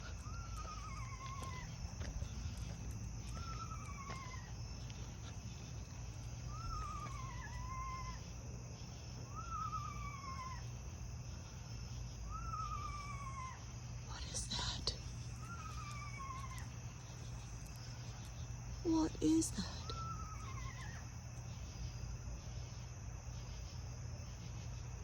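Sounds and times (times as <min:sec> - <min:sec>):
animal wavering whinny-like call: 0:00.0 - 0:02.3, 0:03.3 - 0:04.6, 0:06.5 - 0:08.3, 0:09.3 - 0:10.7, 0:12.3 - 0:13.8, 0:15.4 - 0:16.7, 0:19.8 - 0:21.0.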